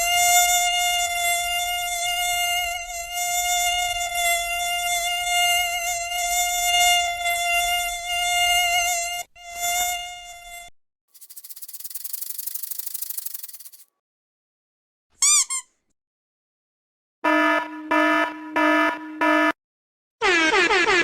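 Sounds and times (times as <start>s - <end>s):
insect buzzing: 0.0s - 10.6s, 11.2s - 13.8s
quick chirps: 11.2s - 13.8s
air horn blasts: 17.2s - 19.6s.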